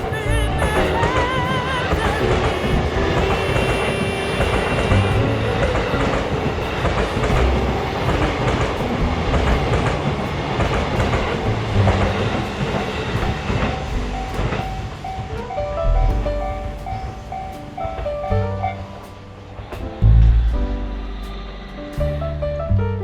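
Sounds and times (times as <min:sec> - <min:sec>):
wheels clacking over rail joints: 0:00.0 - 0:15.6
train rumble: 0:00.0 - 0:23.0.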